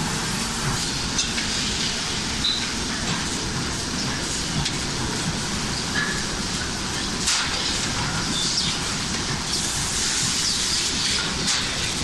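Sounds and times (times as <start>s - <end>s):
machinery rumble and hiss: 0.0s - 12.0s.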